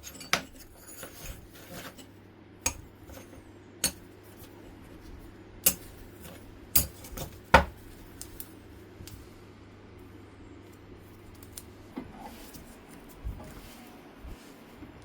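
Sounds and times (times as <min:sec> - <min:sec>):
steel pieces clinking: 0:00.0 - 0:02.1
steady low hum: 0:00.0 - 0:15.0.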